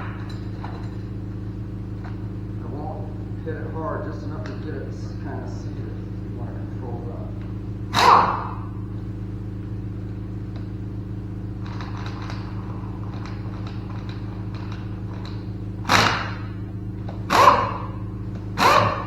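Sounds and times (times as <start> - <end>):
pneumatic impact wrench: 0.0 - 1.1, 7.9 - 9.0, 11.6 - 19.0
parts and tools clicking: 0.0 - 1.2, 11.6 - 19.0
steady hum: 0.0 - 19.0.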